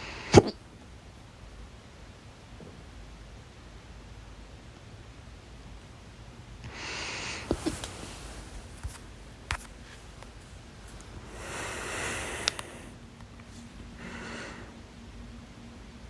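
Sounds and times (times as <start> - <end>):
breathy rush of air: 6.7 - 15.3.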